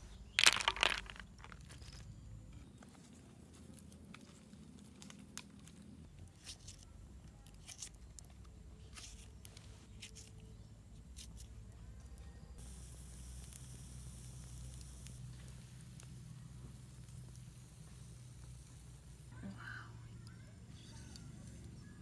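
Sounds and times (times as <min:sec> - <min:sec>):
crunching handling noise: 0:00.0 - 0:12.2
low steady background: 0:00.0 - 0:22.0
faint clicks and rustles: 0:00.2 - 0:12.7.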